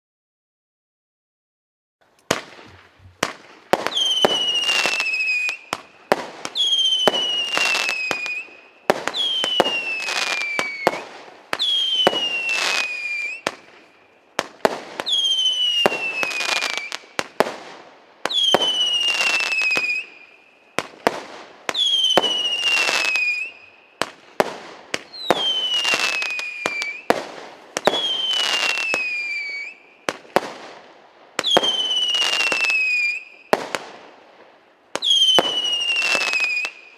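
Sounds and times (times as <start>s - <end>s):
firework crackling: 2.0s - 17.8s
sharp firework bangs: 2.2s - 8.3s
firework launches: 2.2s - 13.6s
falling firework whistle: 2.3s - 14.2s, 15.0s - 17.3s, 18.3s - 21.0s, 21.7s - 24.2s, 25.0s - 27.2s, 27.8s - 30.3s, 31.4s - 33.8s, 35.0s - 36.9s.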